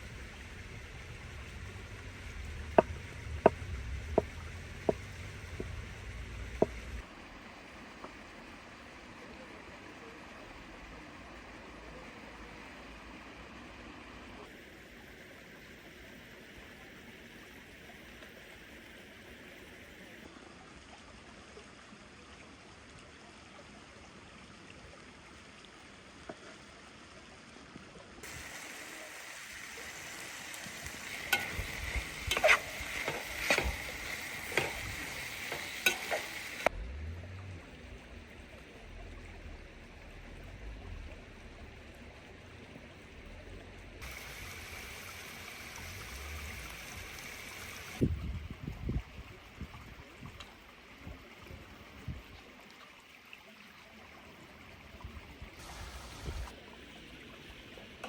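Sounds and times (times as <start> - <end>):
dull knocks: 2.8 - 5.9
food sizzling in a pan: 28.2 - 36.7, 44.0 - 48.0
utensil scraping a pan: 30.8 - 36.7.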